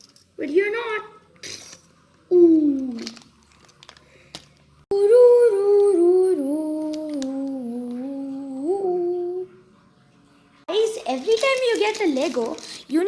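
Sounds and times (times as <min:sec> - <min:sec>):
person humming a tune: 0:04.9 - 0:09.6.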